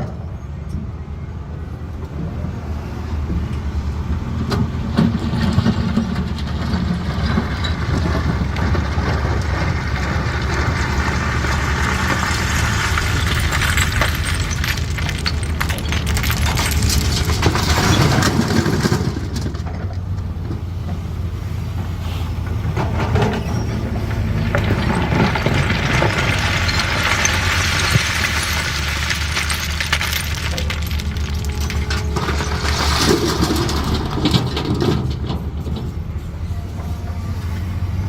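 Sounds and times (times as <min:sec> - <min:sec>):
excavator diesel engine running: 0:00.2 - 0:38.0
stone and bucket clattering: 0:06.3 - 0:19.8, 0:22.8 - 0:35.5.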